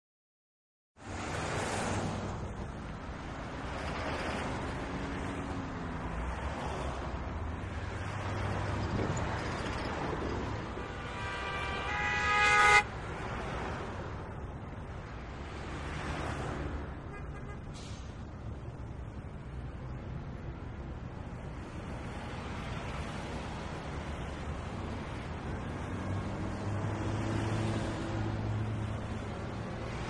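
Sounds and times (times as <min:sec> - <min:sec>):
passing cars: 0:01.0 - 0:30.0
car horn: 0:10.6 - 0:13.2, 0:17.1 - 0:17.7.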